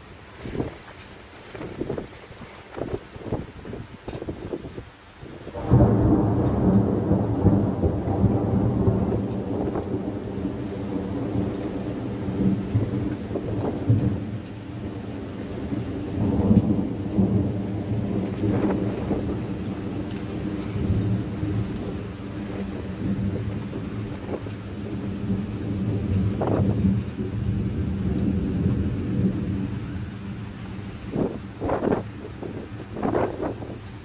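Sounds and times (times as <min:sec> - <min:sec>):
rain falling: 0:00.0 - 0:34.0
thunder rumbling: 0:01.6 - 0:34.0.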